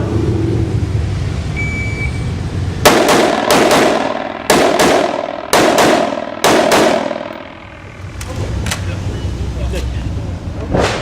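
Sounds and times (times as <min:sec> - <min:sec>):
rifle shots with ringing echo: 0:02.8 - 0:07.9.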